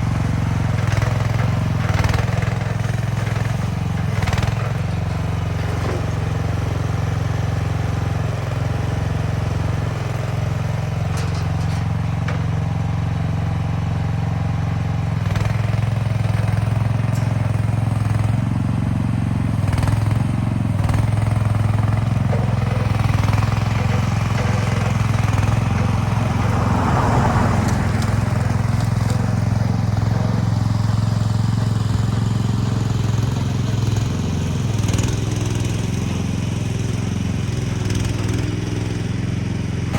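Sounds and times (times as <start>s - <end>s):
small engine running: 0.0s - 39.9s
short metal clanks: 11.0s - 12.5s.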